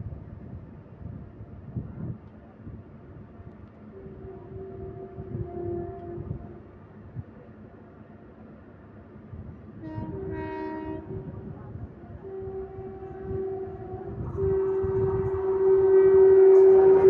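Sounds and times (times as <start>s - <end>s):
train horn blasts: 3.8s - 6.8s, 9.7s - 17.0s.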